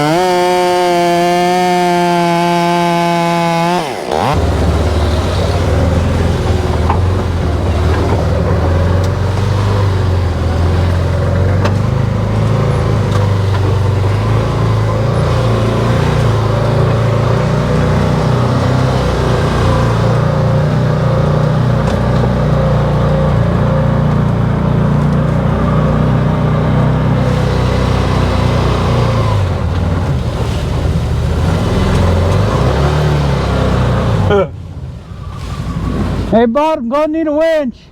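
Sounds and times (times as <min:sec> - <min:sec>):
vehicle engine running under load: 0:00.0 - 0:36.4.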